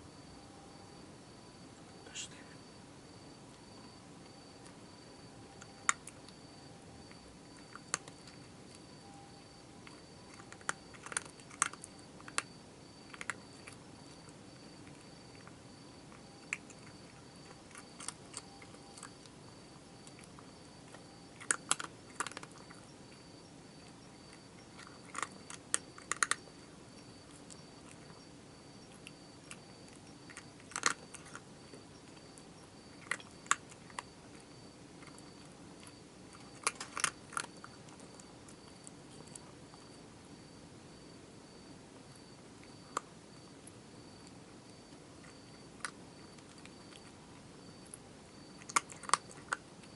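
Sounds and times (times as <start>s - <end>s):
insect trill: 0.1s - 49.9s
cat crunching dry food: 3.5s - 40.4s, 42.0s - 49.9s.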